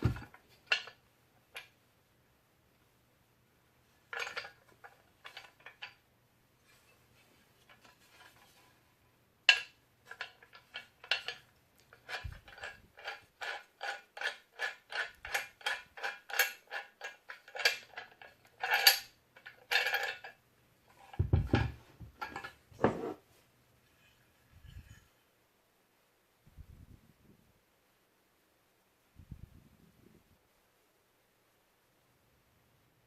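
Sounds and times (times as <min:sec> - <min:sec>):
metal parts clicking and clinking: 0:00.0 - 0:01.7, 0:04.1 - 0:06.0, 0:09.5 - 0:20.4, 0:21.0 - 0:22.6.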